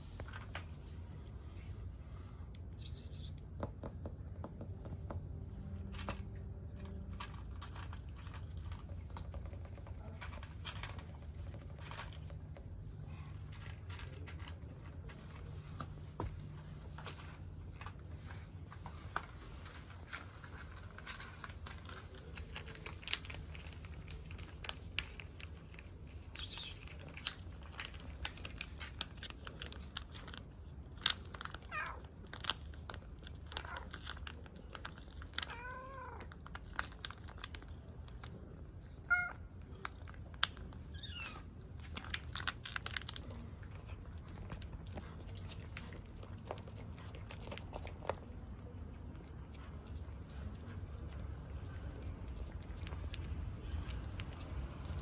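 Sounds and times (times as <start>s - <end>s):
small clicks and crunches: 5.0s - 55.0s
cat meowing: 35.4s - 36.3s, 39.0s - 39.5s.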